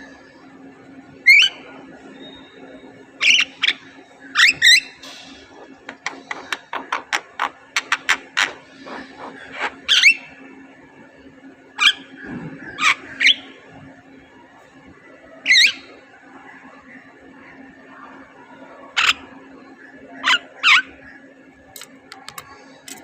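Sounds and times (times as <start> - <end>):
faint steady hum: 0.0 - 23.0
harsh wavering bird calls: 1.2 - 2.6, 3.2 - 10.5, 11.8 - 13.6, 15.4 - 16.0, 18.9 - 21.3.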